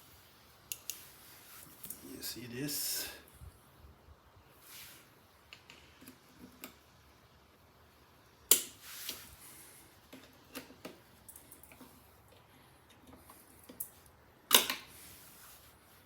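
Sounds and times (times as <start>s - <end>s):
short rustle: 1.0s - 2.5s, 8.8s - 9.9s, 14.9s - 16.0s.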